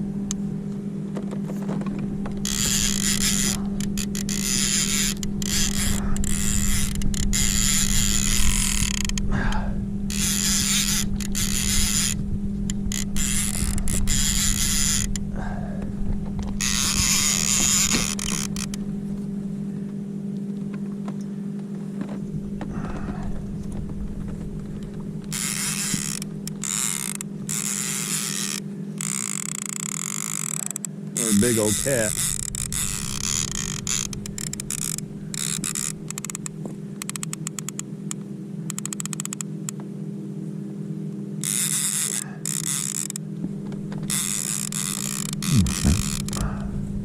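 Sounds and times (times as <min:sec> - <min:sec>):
steady low hum: 0:00.0 - 0:47.0
fishing reel whirring: 0:02.3 - 0:15.6, 0:16.6 - 0:19.0, 0:25.3 - 0:39.5, 0:41.4 - 0:43.3, 0:43.9 - 0:46.7.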